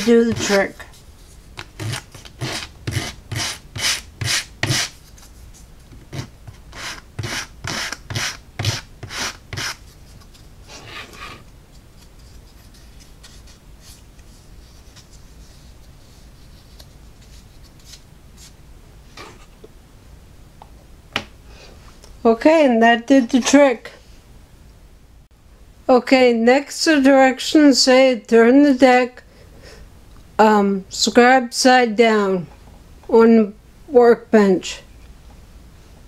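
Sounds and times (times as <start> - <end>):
emery board sanding wood: 0.0 - 5.0, 6.1 - 10.1.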